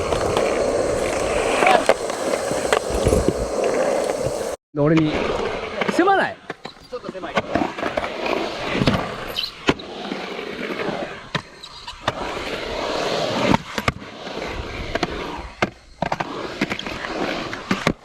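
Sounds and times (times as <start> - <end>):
skateboard clacks: 0.0 - 4.6
skateboard wheels rolling on concrete: 0.0 - 18.0.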